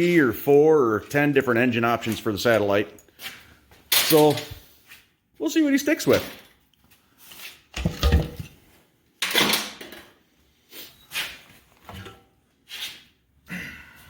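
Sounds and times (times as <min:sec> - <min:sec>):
metal tools and parts clanking: 0:03.9 - 0:04.6, 0:07.8 - 0:08.6.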